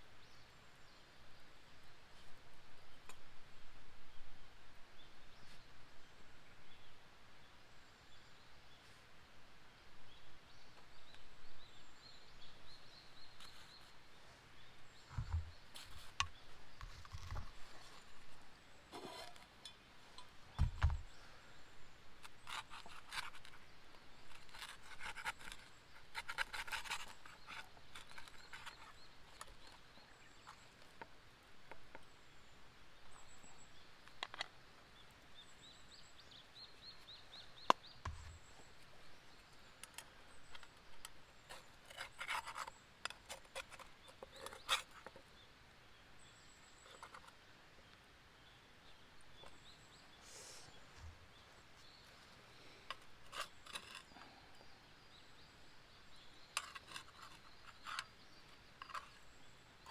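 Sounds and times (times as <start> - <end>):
small birds chirping and trilling: 5.0 - 59.9
dull thumps: 20.6 - 21.1.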